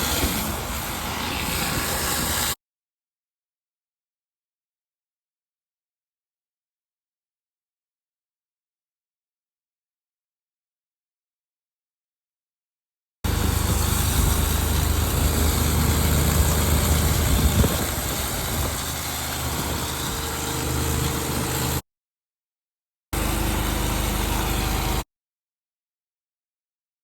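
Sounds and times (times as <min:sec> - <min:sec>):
pressure washer engine hum: 0:00.0 - 0:02.6, 0:13.3 - 0:21.8, 0:23.2 - 0:25.0
water spray hiss: 0:00.0 - 0:02.6, 0:13.3 - 0:21.8.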